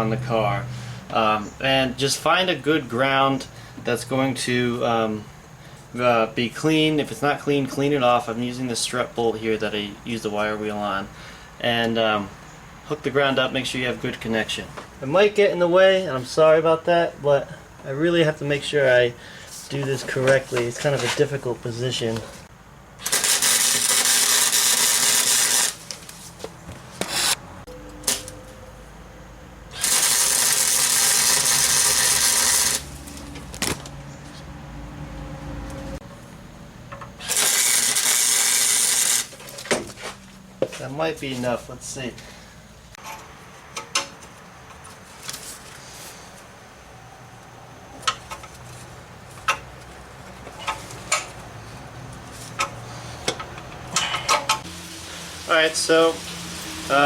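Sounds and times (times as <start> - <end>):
welder arc: 23.0 - 25.9, 27.0 - 28.4, 29.7 - 33.3, 37.1 - 39.6, 54.6 - 57.0.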